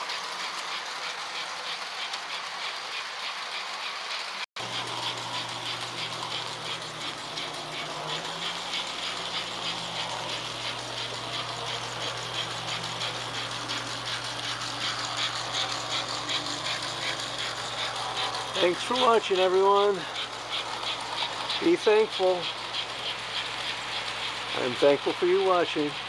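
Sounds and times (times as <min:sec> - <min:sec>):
model train mechanical clicking: 0:00.0 - 0:26.0
low motor hum: 0:04.6 - 0:26.0.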